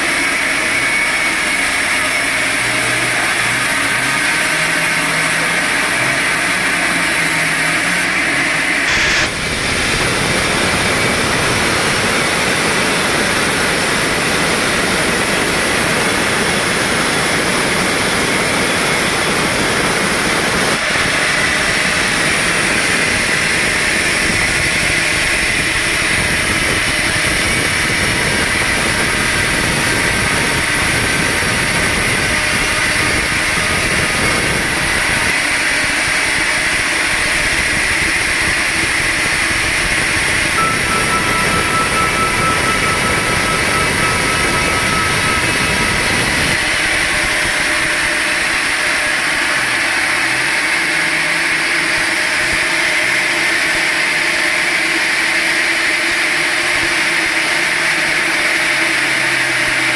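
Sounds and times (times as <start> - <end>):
sawmill machinery humming: 0.0 - 59.9
loud even hiss: 8.8 - 21.0.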